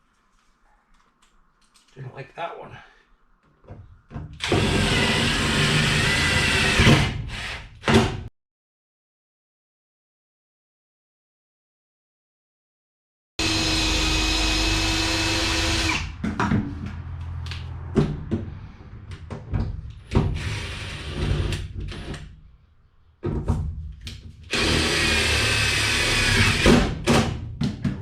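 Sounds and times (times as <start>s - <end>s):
power drill driving screws: 4.4s - 7.9s, 13.4s - 16.1s, 20.4s - 22.2s, 24.5s - 26.8s.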